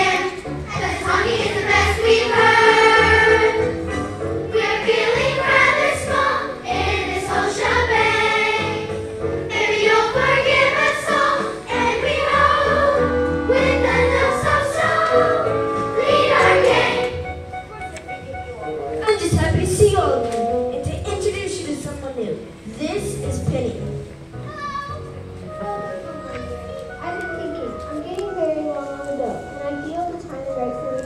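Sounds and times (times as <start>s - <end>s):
children singing in chorus: 0.0s - 3.7s, 9.5s - 17.2s
musical accompaniment with beat: 8.1s - 21.0s.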